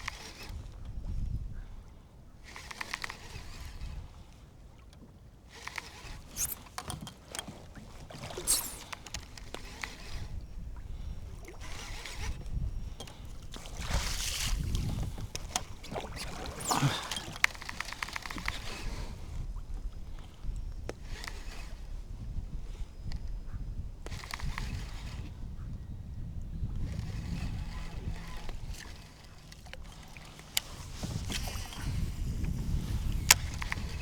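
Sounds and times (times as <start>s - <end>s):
wind buffeting microphone: 0.0s - 2.0s, 7.5s - 34.0s
water sloshing against kayak hull: 2.8s - 20.4s, 27.0s - 34.0s
small clicks and knocks: 4.8s - 10.4s.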